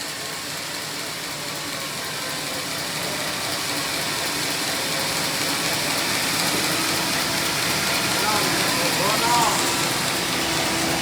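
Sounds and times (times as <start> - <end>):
sawmill running with hiss: 0.0 - 11.0.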